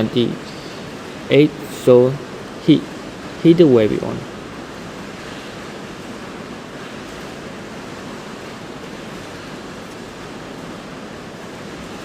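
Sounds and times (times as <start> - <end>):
steady background hiss: 0.0 - 12.0.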